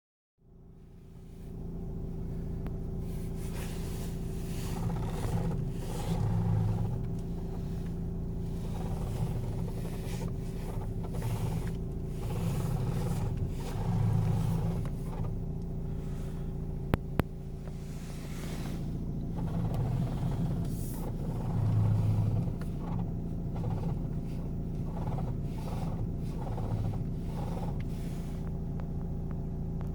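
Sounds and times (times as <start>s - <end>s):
diesel engine idling: 0.4s - 29.9s.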